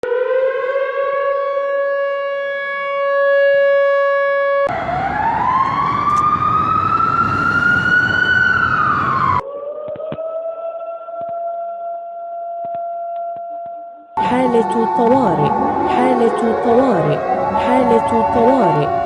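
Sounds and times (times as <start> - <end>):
emergency siren wailing: 0.0 - 11.3, 14.2 - 19.0
heavy noise: 14.2 - 19.0.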